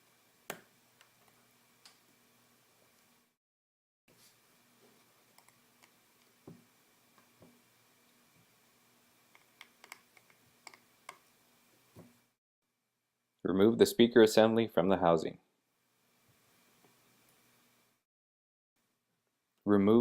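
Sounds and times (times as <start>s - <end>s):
small tools clicking and tapping: 9.3s - 11.2s.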